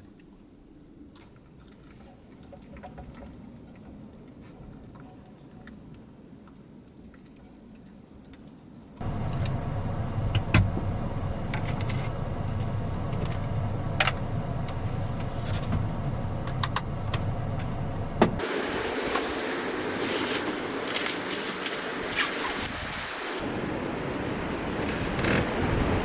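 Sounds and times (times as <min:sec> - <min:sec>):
clicks and rattles: 0:09.0 - 0:18.4
car engine and road noise: 0:09.0 - 0:26.0.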